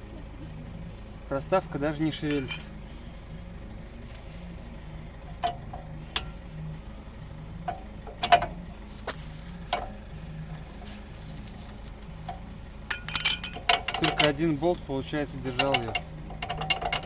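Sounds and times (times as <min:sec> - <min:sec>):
metal bolts clicking and clinking: 0:02.2 - 0:02.7, 0:05.3 - 0:06.4, 0:07.6 - 0:08.6, 0:12.3 - 0:14.6, 0:15.3 - 0:17.0.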